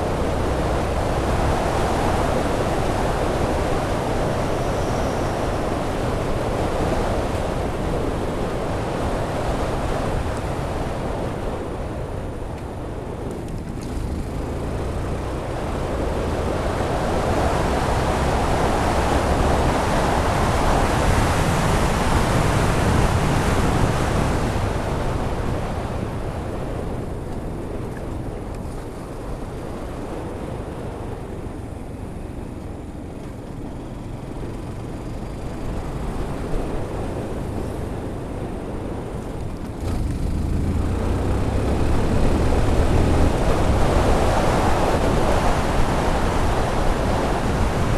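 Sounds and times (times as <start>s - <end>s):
wind noise on microphone: 0.0s - 47.9s.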